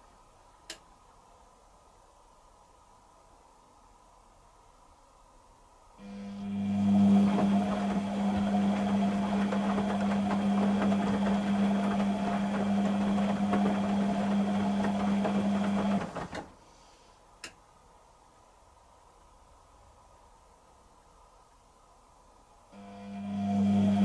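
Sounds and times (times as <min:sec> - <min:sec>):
washing machine drain pump humming: 0:06.0 - 0:16.6, 0:22.8 - 0:24.0.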